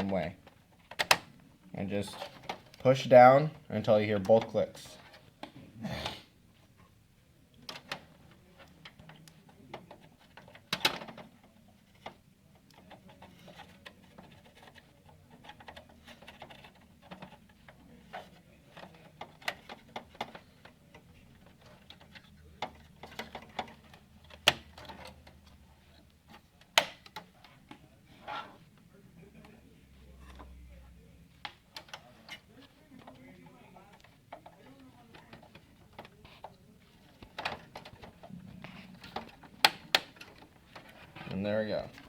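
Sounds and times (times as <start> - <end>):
hands clicking computer parts: 0.0 - 1.4, 7.7 - 27.8, 31.3 - 42.0
faint low hum: 4.9 - 42.0.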